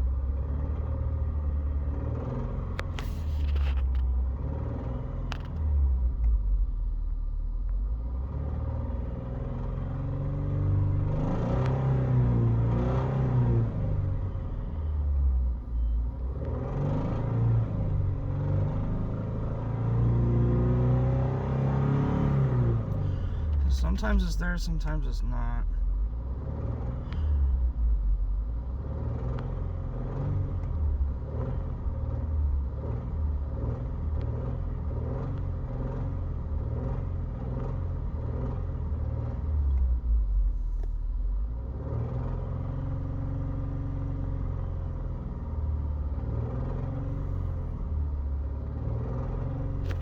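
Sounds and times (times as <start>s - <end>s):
faint repeating engine tick: 5.2s - 8.0s, 26.8s - 29.8s, 30.4s - 31.3s, 33.4s - 38.5s, 39.6s - 41.2s
car engine idling: 22.3s - 28.9s.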